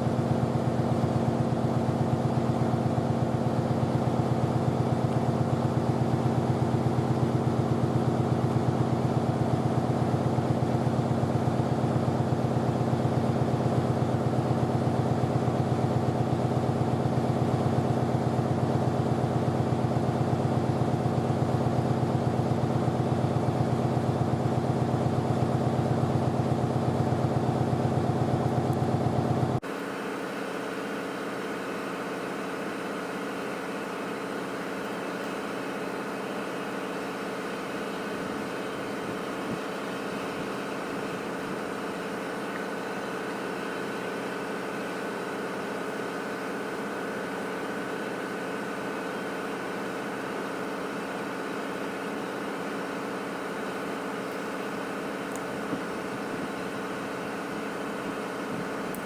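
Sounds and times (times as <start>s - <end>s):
motor humming steadily: 0.0s - 59.0s.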